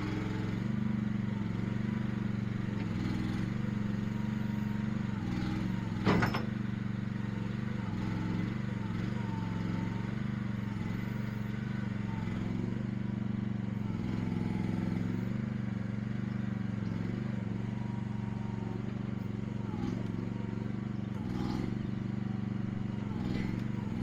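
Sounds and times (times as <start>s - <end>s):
small gasoline engine running: 0.0s - 24.0s.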